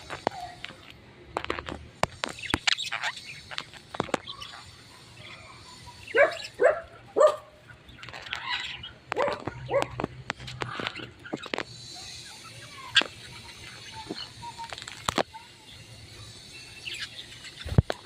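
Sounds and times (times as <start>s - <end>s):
parrot squawking: 6.0s - 10.0s.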